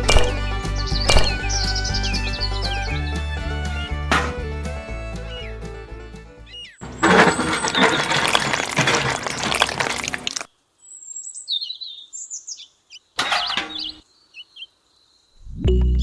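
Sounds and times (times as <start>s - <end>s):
small birds chirping: 0.0s - 3.9s, 5.2s - 5.8s, 6.4s - 7.0s, 10.3s - 16.0s.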